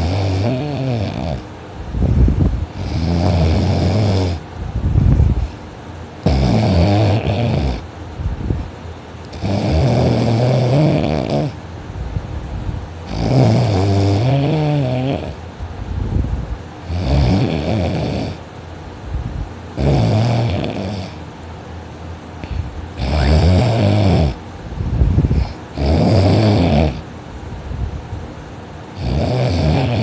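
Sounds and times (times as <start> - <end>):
person snoring loudly: 0.0 - 4.4, 6.2 - 7.9, 9.3 - 11.6, 13.0 - 15.4, 16.8 - 18.4, 19.8 - 21.2, 22.4 - 24.4, 25.1 - 27.0, 29.0 - 30.0
quiet breathing: 22.4 - 23.3.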